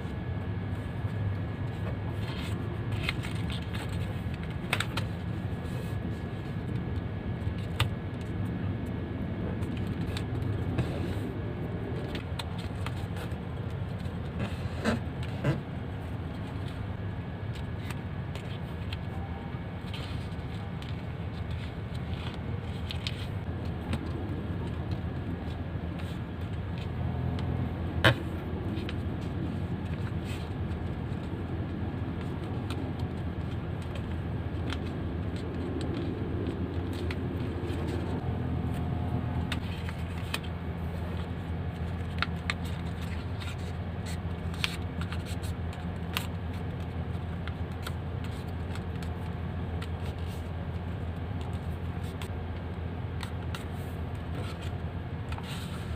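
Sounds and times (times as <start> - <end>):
steady low hum: 0.0 - 55.9
paper folding and rustling: 1.6 - 6.7, 17.5 - 26.9, 28.0 - 38.2, 39.5 - 55.9.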